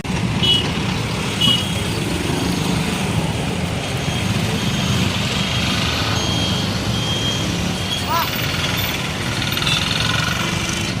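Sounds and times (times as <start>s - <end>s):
road traffic engines: 0.0s - 11.0s
short high beeps: 4.0s - 8.3s.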